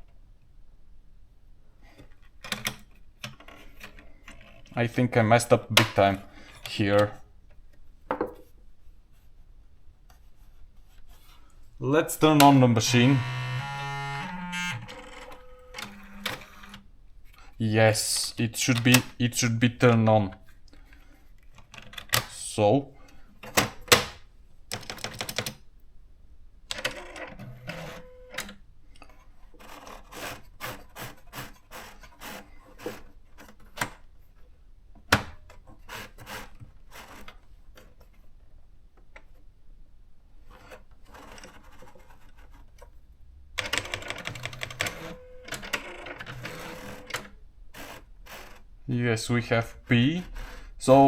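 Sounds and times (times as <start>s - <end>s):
carriage motor whirring: 12.8s - 16.8s, 44.3s - 48.6s
typewriter keys clicking: 24.7s - 25.6s.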